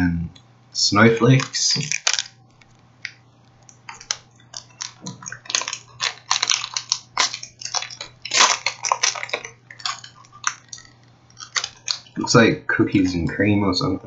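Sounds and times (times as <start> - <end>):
plastic wrapper crinkling: 1.2 - 12.4.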